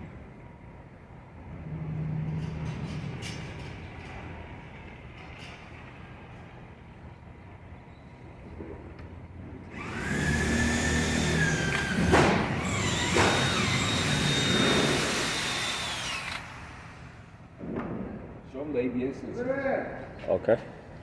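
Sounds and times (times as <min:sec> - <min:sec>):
low shop rumble: 0:00.0 - 0:21.0
machine hissing whine: 0:09.8 - 0:17.5.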